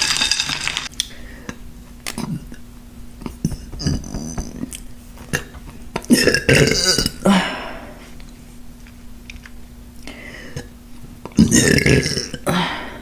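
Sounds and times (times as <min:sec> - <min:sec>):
woman burping loudly: 0:06.1 - 0:07.6, 0:11.4 - 0:12.8.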